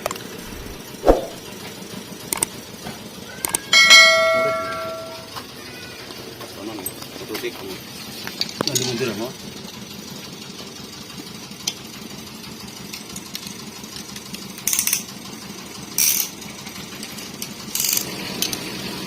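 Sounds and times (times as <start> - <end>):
ratchet wrench clicking: 16.0 - 16.3.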